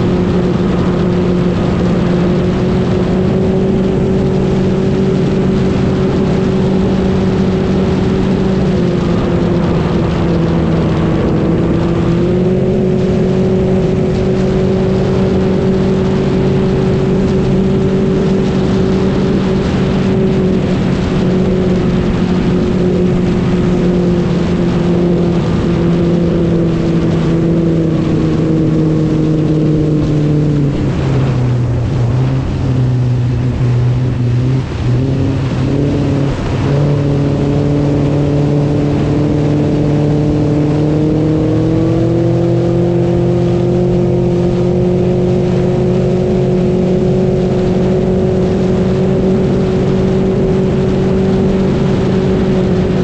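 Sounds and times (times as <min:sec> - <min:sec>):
vehicle engine running: 0:00.0 - 0:53.0.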